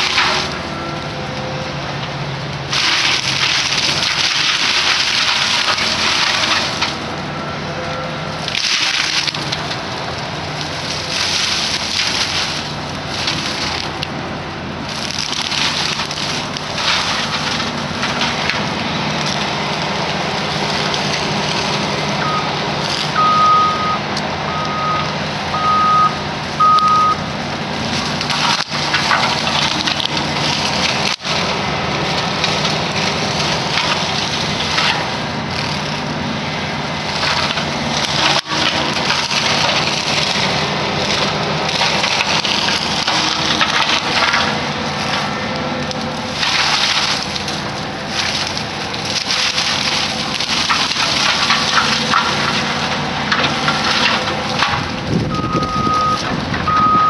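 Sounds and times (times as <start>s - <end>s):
engine droning: 0.0s - 57.0s
travel alarm beeps: 22.2s - 22.5s, 23.2s - 27.2s, 55.4s - 57.0s.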